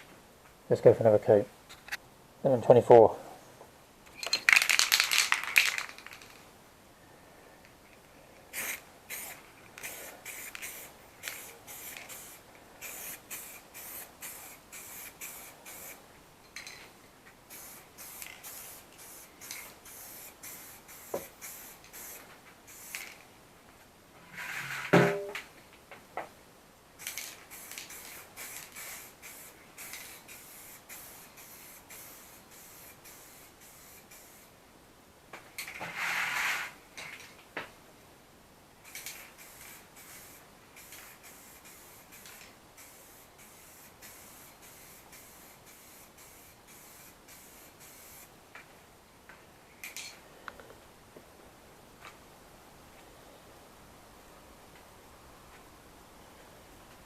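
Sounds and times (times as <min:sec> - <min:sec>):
spray paint can hissing: 0:04.5 - 0:06.4, 0:08.5 - 0:16.0, 0:17.5 - 0:23.2, 0:27.0 - 0:34.5, 0:38.8 - 0:48.3.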